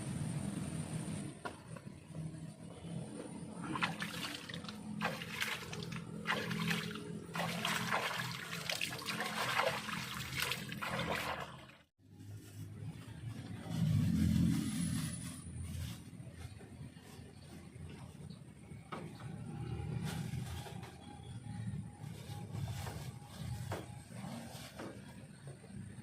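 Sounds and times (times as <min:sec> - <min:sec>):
water splashing and rushing: 0:03.6 - 0:11.9.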